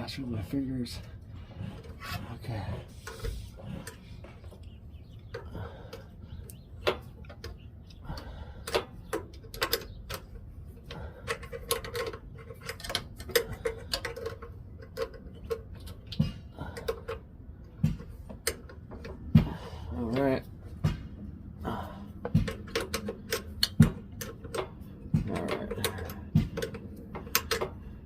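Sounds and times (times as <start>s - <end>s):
metallic clicks of hand tools: 22.2s - 27.8s.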